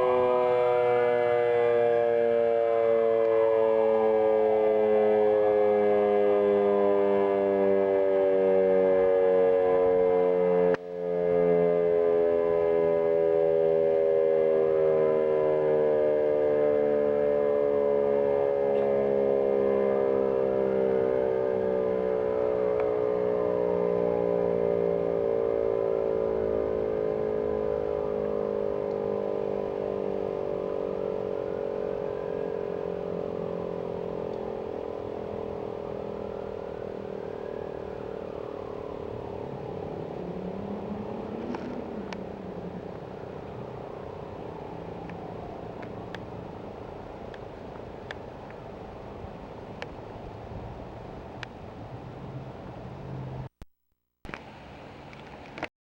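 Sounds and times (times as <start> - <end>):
warning siren winding down: 0.0 - 53.6.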